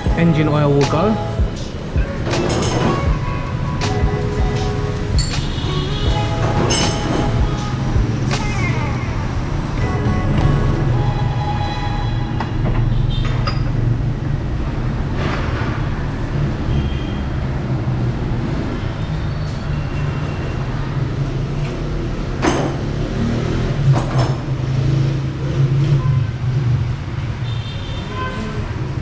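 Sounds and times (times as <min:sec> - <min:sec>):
sharp metallic knocks: 0:00.0 - 0:08.9
low vehicle rumble: 0:00.0 - 0:13.0.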